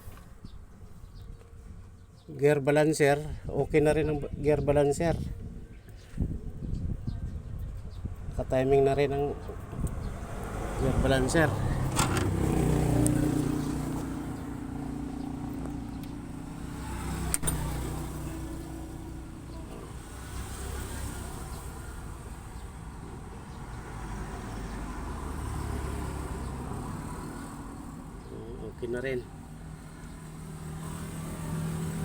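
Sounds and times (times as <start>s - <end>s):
sharp click: 17.3s - 17.7s.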